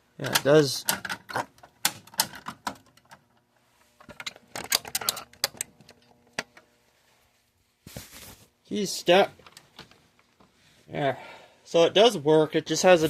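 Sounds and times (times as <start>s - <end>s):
plastic clicks and rattles: 0.2s - 3.4s, 4.0s - 6.6s.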